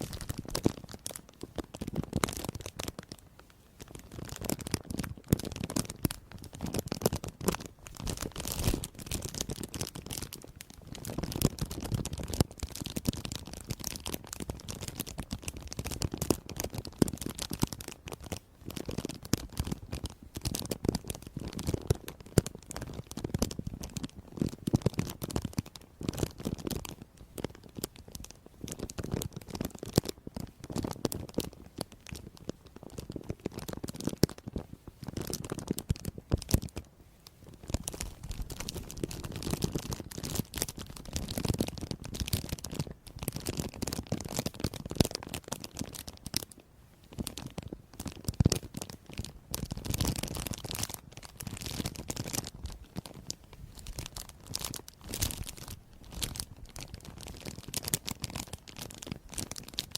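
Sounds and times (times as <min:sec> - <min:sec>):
crisp crackling and crunching: 0:00.0 - 0:59.9.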